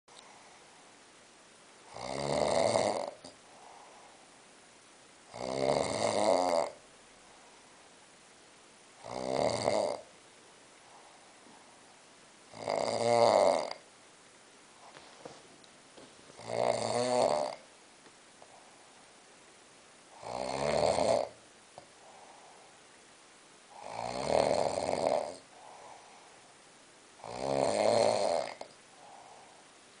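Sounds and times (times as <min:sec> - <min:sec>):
man snoring: 0:01.9 - 0:03.3, 0:05.3 - 0:06.8, 0:09.0 - 0:10.1, 0:12.5 - 0:13.8, 0:16.4 - 0:17.6, 0:20.1 - 0:21.4, 0:23.7 - 0:25.9, 0:27.2 - 0:29.3
faint breath: 0:03.4 - 0:04.4, 0:10.8 - 0:11.9, 0:18.4 - 0:19.1, 0:21.8 - 0:22.9, 0:25.5 - 0:26.6, 0:28.8 - 0:29.8.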